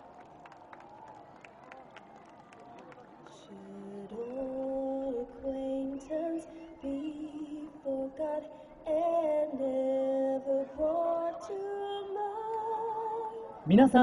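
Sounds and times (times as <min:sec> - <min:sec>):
woman singing long notes: 0:03.4 - 0:13.6.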